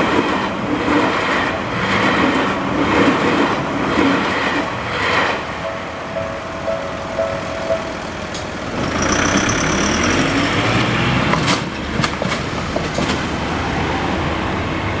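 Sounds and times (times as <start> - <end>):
high whine: 4.9 - 10.4
heavy vehicle engine rumble: 7.7 - 13.6.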